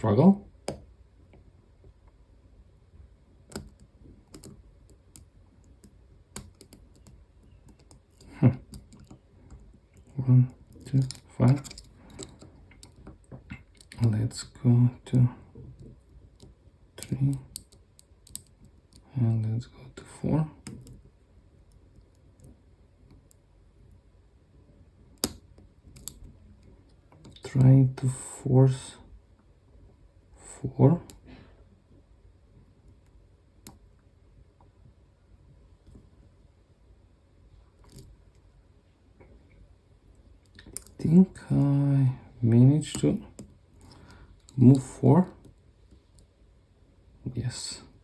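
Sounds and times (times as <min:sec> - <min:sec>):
lock pick clicking and scraping: 0:03.5 - 0:14.0, 0:16.3 - 0:19.0, 0:25.2 - 0:26.3.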